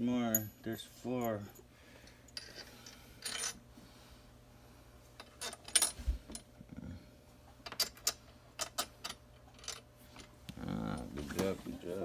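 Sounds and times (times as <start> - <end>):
metal parts clinking: 2.3 - 3.6, 5.2 - 6.0, 7.6 - 9.8.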